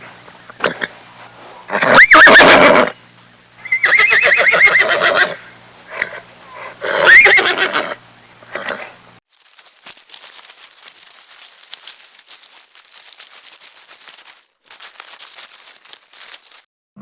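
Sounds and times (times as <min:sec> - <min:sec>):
horse whinnying: 0:01.6 - 0:03.0, 0:03.6 - 0:09.0.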